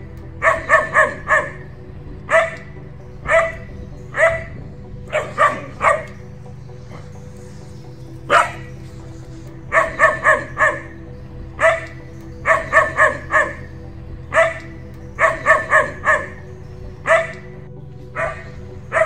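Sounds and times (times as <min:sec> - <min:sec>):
dog barking: 0:00.4 - 0:01.6, 0:02.3 - 0:04.5, 0:05.1 - 0:06.2, 0:08.3 - 0:08.7, 0:09.7 - 0:11.0, 0:11.6 - 0:13.7, 0:14.3 - 0:16.4, 0:17.0 - 0:17.5, 0:18.2 - 0:19.0.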